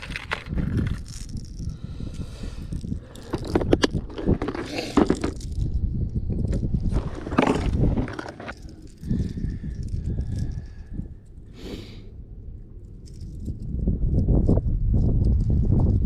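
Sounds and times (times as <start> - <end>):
wind buffeting microphone: 0.0 - 16.0
scrapes and knocks: 3.1 - 5.7, 6.5 - 9.3.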